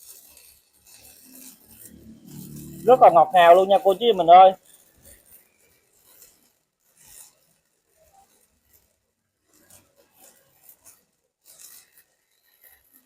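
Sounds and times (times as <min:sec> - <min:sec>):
faint scrapes and rubs: 0:00.0 - 0:13.0.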